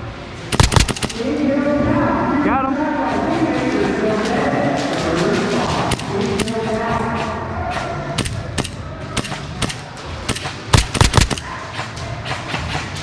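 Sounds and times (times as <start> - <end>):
airsoft guns firing: 0.5 - 1.4, 5.9 - 6.8, 8.2 - 12.0.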